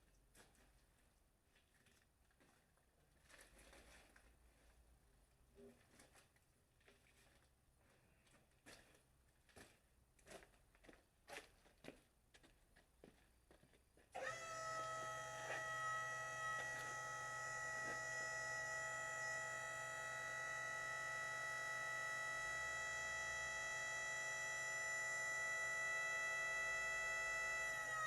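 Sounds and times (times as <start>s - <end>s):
motor starting and humming: 14.2s - 28.0s.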